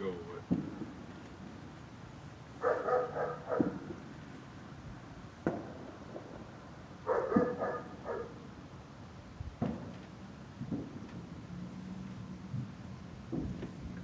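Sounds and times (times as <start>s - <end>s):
dog barking: 2.6s - 3.8s, 7.1s - 8.4s.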